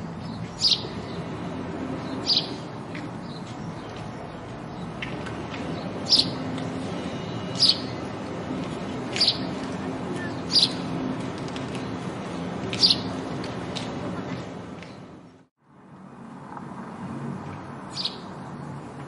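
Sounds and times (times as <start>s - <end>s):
sparrow chirping: 0.0s - 11.0s, 12.7s - 13.2s, 17.9s - 18.4s.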